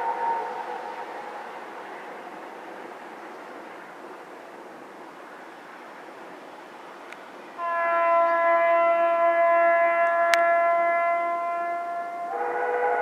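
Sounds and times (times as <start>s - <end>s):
long loud locomotive whistle: 0.0s - 1.5s, 7.6s - 13.0s
steam locomotive running: 10.9s - 13.0s.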